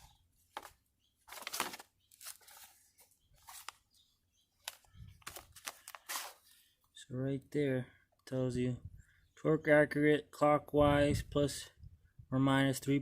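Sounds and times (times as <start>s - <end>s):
paper rustling and crinkling: 0.0s - 4.0s, 4.6s - 6.6s.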